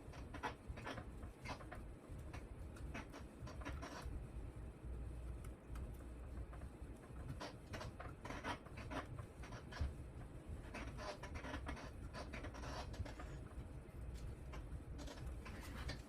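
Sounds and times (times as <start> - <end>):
hands scratching and rubbing wiring: 5.3 - 16.0.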